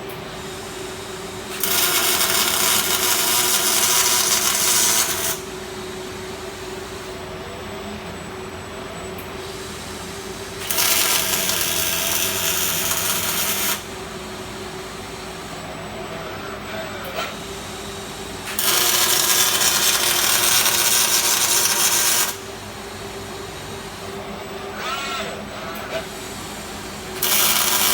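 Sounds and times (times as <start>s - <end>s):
welding arc hissing: 0.9s - 5.6s, 9.8s - 14.0s, 18.4s - 22.5s, 26.5s - 27.9s.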